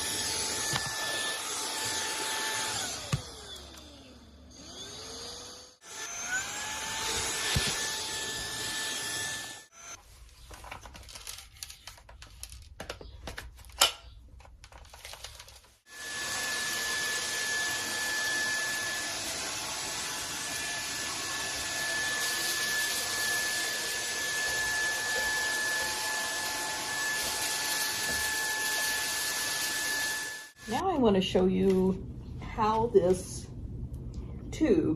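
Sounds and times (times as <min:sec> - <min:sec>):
stick vacuum motor whine: 0:00.0 - 0:10.0, 0:15.9 - 0:30.8.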